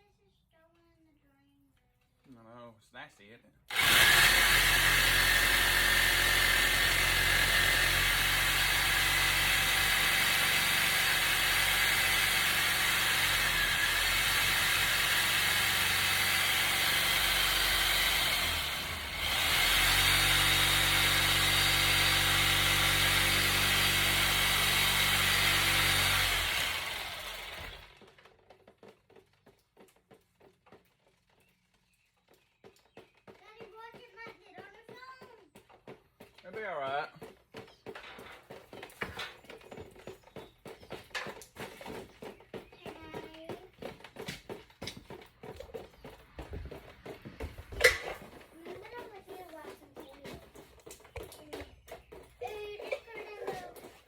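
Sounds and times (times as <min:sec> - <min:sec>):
power tool cutting pipe: 0:03.7 - 0:28.1.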